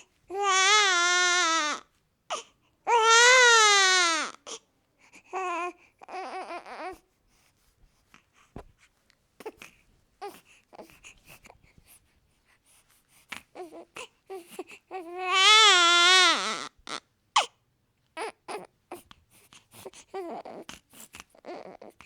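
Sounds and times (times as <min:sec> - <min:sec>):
baby fussing and whimpering: 0:00.0 - 0:07.5, 0:09.4 - 0:17.6, 0:18.2 - 0:22.0
baby crying: 0:00.3 - 0:04.6, 0:05.4 - 0:07.0, 0:13.6 - 0:17.5, 0:21.4 - 0:22.0.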